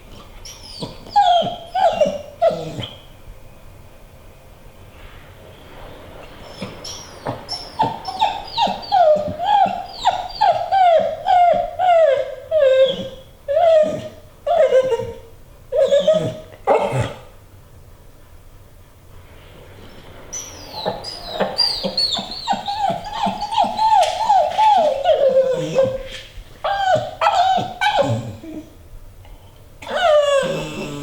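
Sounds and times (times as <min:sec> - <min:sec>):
dog whining: 0:00.1 - 0:03.1, 0:06.2 - 0:17.3, 0:20.3 - 0:28.8, 0:29.8 - 0:31.0.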